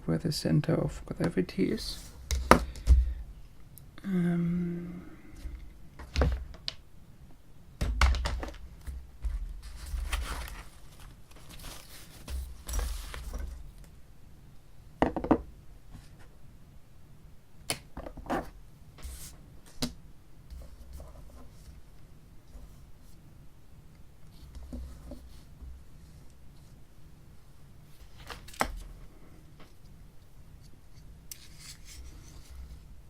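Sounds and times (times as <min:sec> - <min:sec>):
rustling: 0:08.4 - 0:13.9.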